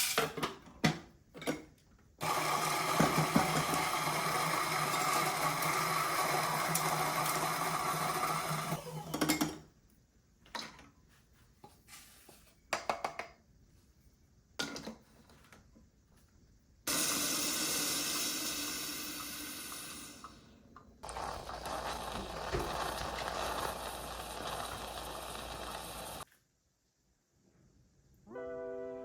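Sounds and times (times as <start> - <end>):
kitchen appliance motor running: 2.2 - 9.3, 21.0 - 26.2.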